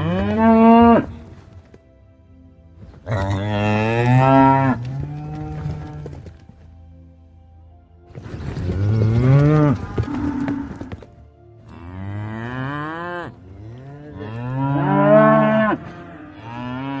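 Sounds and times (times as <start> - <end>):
cattle mooing: 0.0 - 1.3, 3.0 - 6.2, 8.6 - 17.0.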